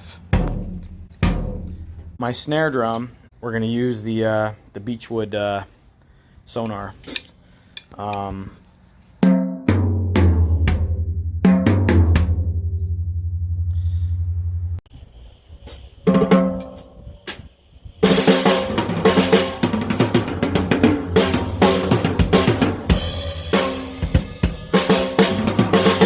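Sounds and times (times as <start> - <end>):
drum kit playing a groove: 0.0 - 2.2, 9.2 - 12.6, 16.1 - 26.0
low drum boom: 0.2 - 2.2.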